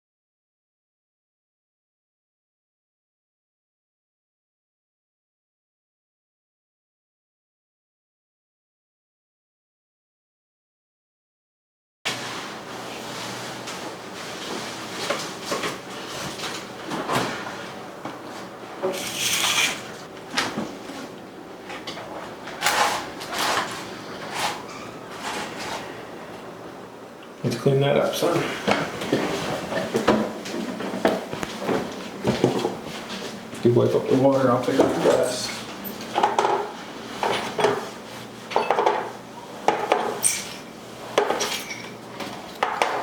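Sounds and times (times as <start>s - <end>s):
scraping and knocking handling noises: 13.6s - 25.9s, 28.2s - 33.7s, 34.4s - 43.0s
dishes and glassware clinking: 38.5s - 40.6s, 41.2s - 42.0s.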